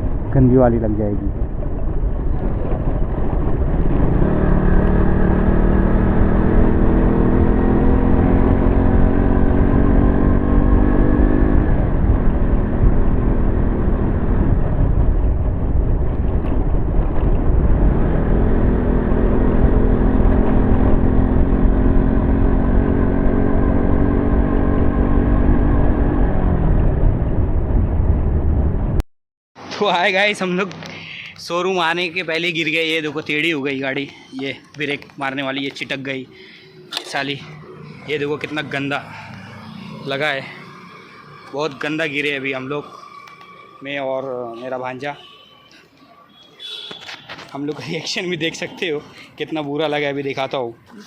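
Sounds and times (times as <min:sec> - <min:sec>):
wind noise: 0:00.0 - 0:08.1, 0:08.9 - 0:29.0
motorcycle engine revving: 0:01.4 - 0:28.0, 0:34.7 - 0:44.6.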